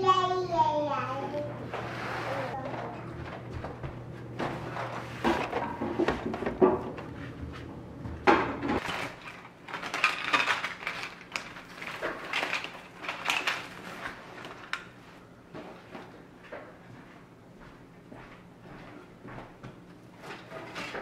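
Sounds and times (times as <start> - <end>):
objects knocking and clattering: 2.6 - 15.0, 19.7 - 21.0.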